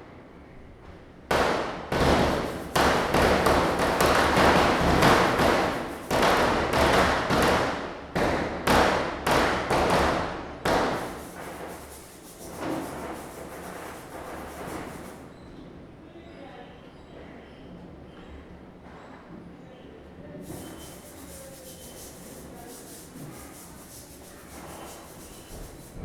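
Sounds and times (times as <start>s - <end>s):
firecrackers bursting: 1.3s - 11.2s.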